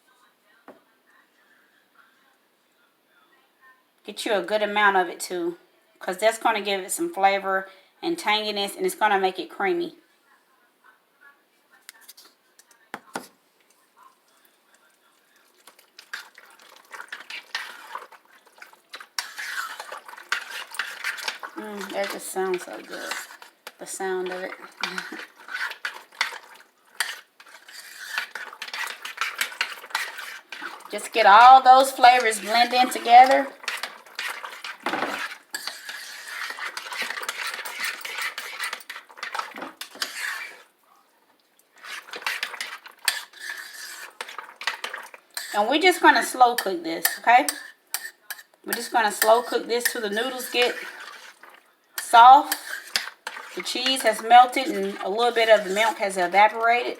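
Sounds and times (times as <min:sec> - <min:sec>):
spoon scraping against crock: 0:11.9 - 0:40.7, 0:41.7 - 0:56.9
spoon stirring in a crock pot: 0:11.9 - 0:56.9.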